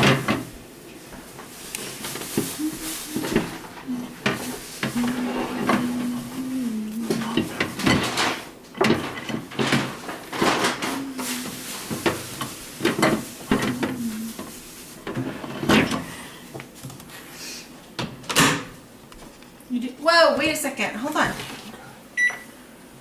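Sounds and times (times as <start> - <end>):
short low hum: 2.6 - 7.5
microwave door and tray rattling: 7.1 - 11.0.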